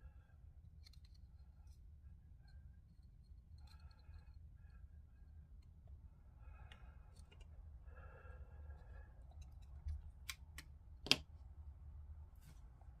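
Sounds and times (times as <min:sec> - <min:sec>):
faint small clicks and taps: 0:00.8 - 0:01.8, 0:06.6 - 0:07.6.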